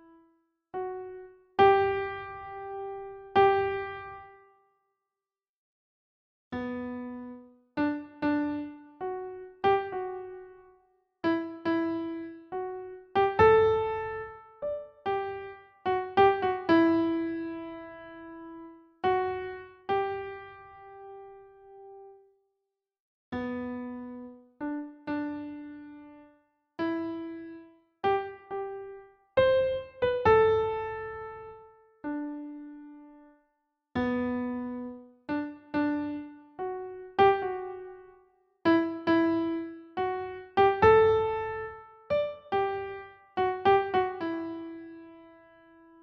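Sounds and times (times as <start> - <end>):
slow piano melody: 0.8 - 4.5, 6.6 - 22.3, 23.4 - 33.4, 34.0 - 46.0.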